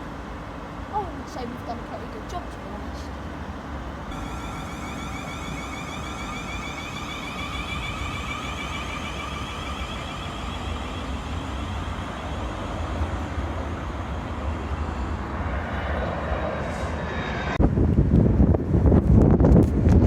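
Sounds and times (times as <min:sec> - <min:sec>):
train rumbling past: 0:00.0 - 0:19.6
pitched horn-like tone: 0:04.1 - 0:12.7
wind buffeting microphone: 0:06.7 - 0:20.0.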